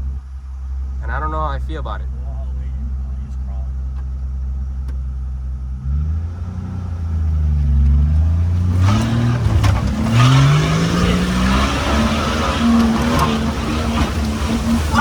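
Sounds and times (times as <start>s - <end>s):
car engine revving: 0.0s - 15.0s
mud and water splashing: 7.4s - 15.0s.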